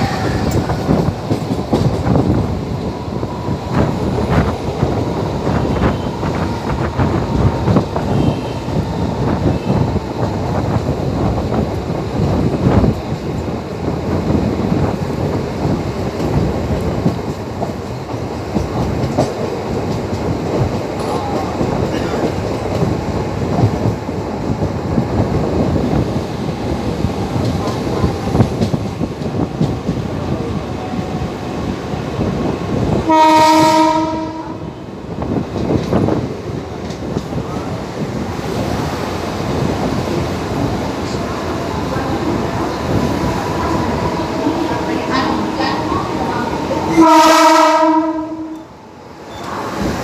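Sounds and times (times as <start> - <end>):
train wheels rumbling on rail: 0.0 - 50.0
train horn: 8.1 - 8.8, 33.0 - 34.8, 46.9 - 48.7.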